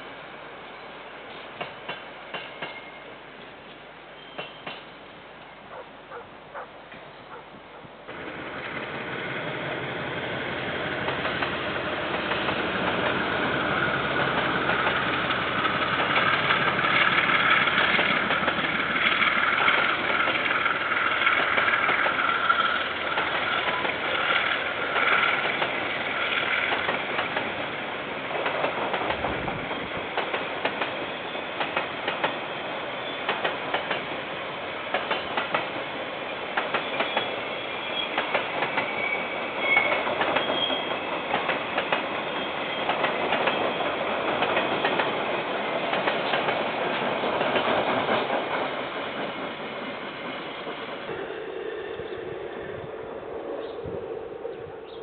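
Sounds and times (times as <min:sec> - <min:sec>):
train passing: 0:00.0 - 0:55.0
wheels clicking over rail joints: 0:10.8 - 0:27.7, 0:28.3 - 0:32.4, 0:33.2 - 0:34.2, 0:34.9 - 0:35.9, 0:38.1 - 0:39.0, 0:39.7 - 0:51.0.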